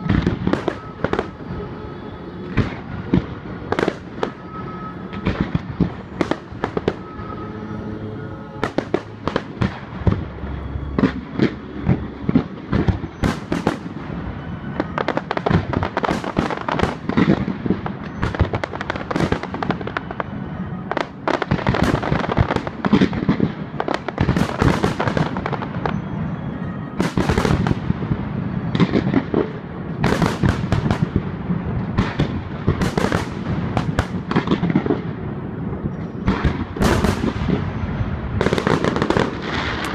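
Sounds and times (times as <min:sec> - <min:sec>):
music playing: 0:00.0 - 0:17.0
fireworks bursting and crackling: 0:00.0 - 0:39.9.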